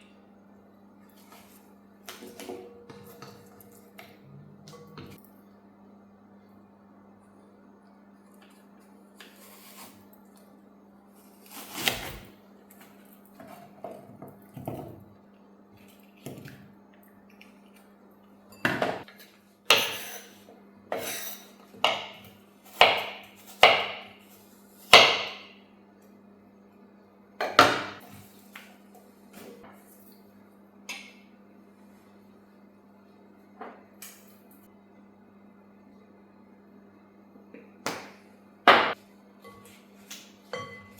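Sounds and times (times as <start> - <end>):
dishes and utensils clinking: 40.5 - 40.9.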